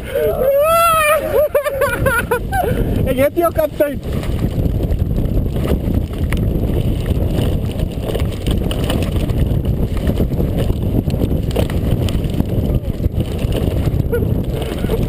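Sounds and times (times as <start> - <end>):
bicycle tyre noise on dirt: 0.0 - 15.0
wind rush on microphone: 0.0 - 15.0
bike knocks and rattles: 3.6 - 15.0.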